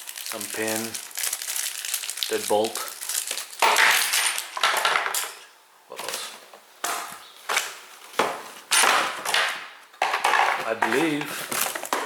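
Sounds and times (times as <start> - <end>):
packaging rustling: 0.0 - 4.6, 10.3 - 12.0.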